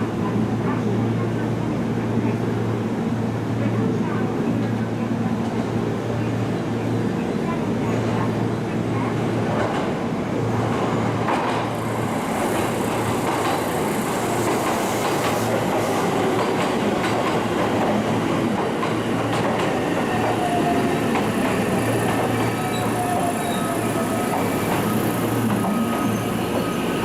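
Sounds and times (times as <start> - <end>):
train wheels clicking over rail joints: 11.3 - 23.4.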